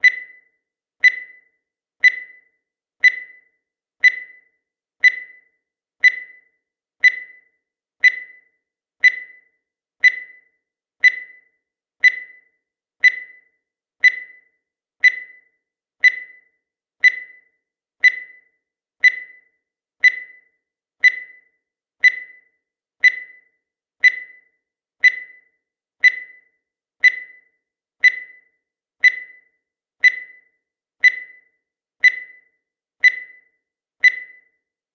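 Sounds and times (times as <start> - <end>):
timer ticking: 0.0 - 34.7.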